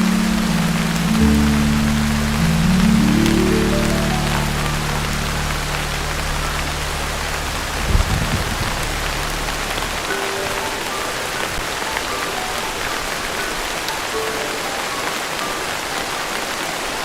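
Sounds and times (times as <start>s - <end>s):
low rumble: 0.0s - 10.1s
heavy rain on a tin roof: 0.0s - 17.0s.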